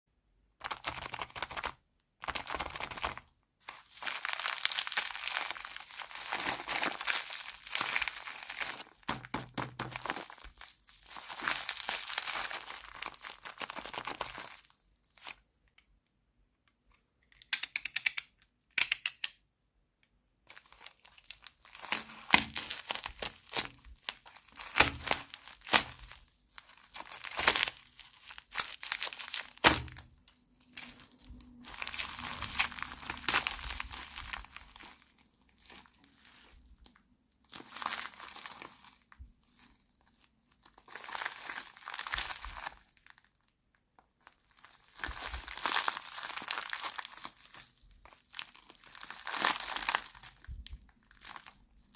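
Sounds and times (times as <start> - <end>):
plastic packaging crinkling: 0.6 - 15.5, 20.5 - 51.9
plastic toy pieces clicking: 17.3 - 19.4.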